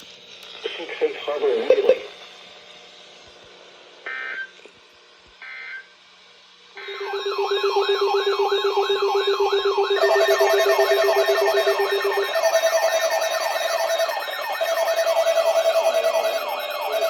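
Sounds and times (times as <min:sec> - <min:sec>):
digital data tone bursts: 0:06.8 - 0:17.0
electronic siren-like alert tone: 0:06.8 - 0:17.0
steady electronic tone: 0:06.8 - 0:17.0.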